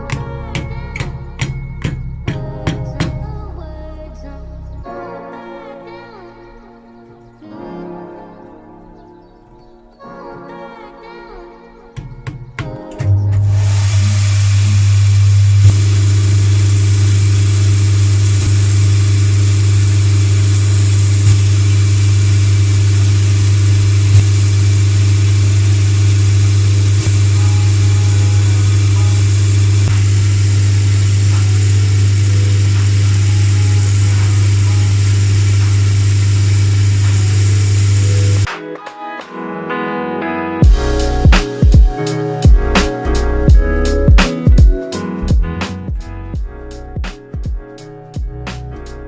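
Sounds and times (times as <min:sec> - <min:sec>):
machine motor humming: 0:13.8 - 0:38.5.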